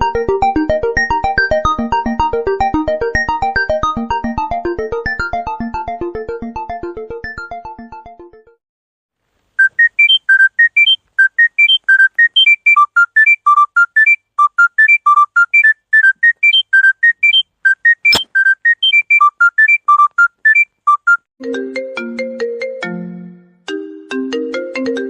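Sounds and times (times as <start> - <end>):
phone ringtone beeps: 9.6 - 21.3
sharp click: 17.3 - 19.1.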